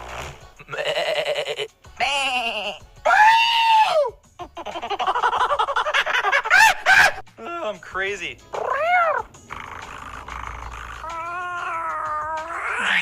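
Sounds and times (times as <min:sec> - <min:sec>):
man imitating animal calls: 0:00.6 - 0:04.1, 0:08.5 - 0:13.0.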